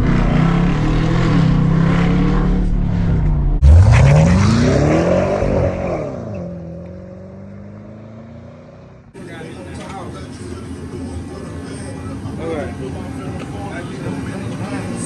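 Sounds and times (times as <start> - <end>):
car engine accelerating hard: 0.0 - 9.1.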